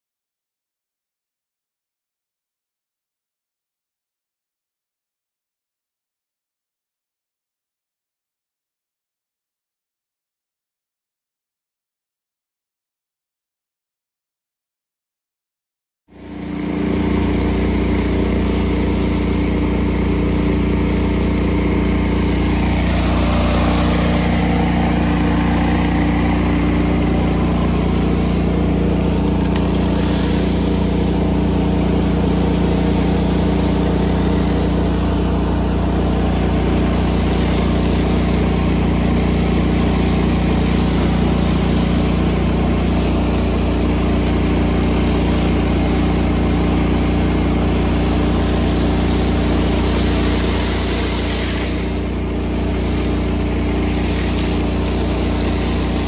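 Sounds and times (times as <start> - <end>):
pressure washer engine running: 16.1 - 56.0.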